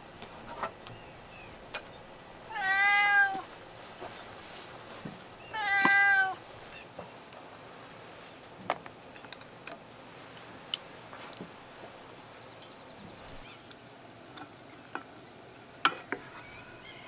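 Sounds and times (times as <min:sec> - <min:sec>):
cat meowing: 0:02.5 - 0:03.5, 0:05.5 - 0:06.4.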